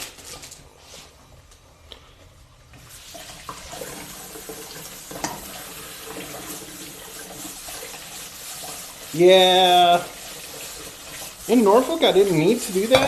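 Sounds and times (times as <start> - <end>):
tap running into a sink: 2.8 - 8.8, 12.7 - 13.0.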